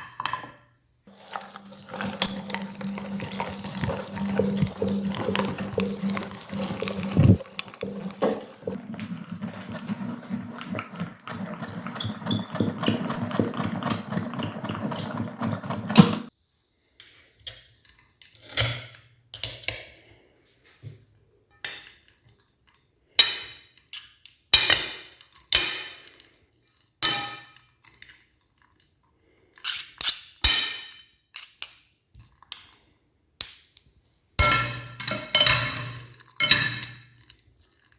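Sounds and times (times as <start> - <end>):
hard objects clinking and knocking: 1.1 - 16.3
meat grinder humming and rattling: 1.1 - 16.3.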